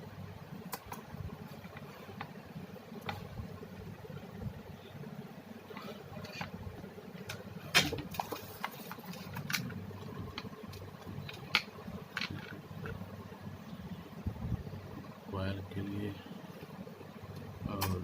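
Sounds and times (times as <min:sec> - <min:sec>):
steady low hum: 0:00.0 - 0:18.0
objects clicking and knocking: 0:07.2 - 0:13.0.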